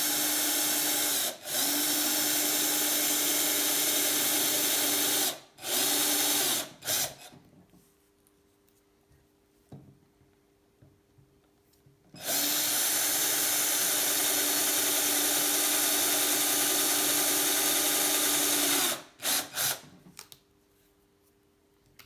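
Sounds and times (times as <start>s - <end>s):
electric drill drilling: 0.0s - 7.3s, 12.2s - 19.9s.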